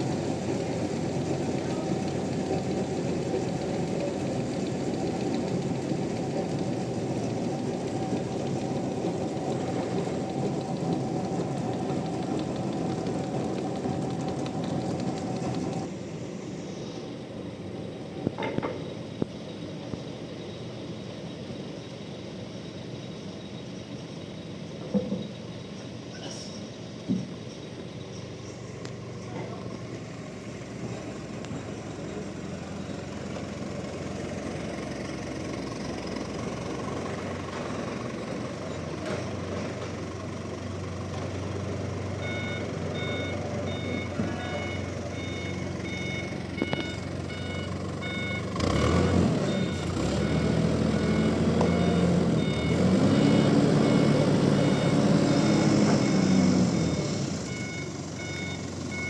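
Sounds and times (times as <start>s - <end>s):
diesel engine revving: 0.0s - 18.2s, 26.3s - 59.0s
reversing alarm beeping: 40.5s - 59.0s.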